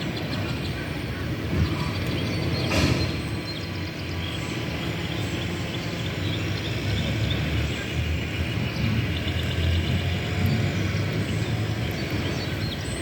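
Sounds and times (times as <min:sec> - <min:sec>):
distant vehicle rumble: 0:00.0 - 0:13.0.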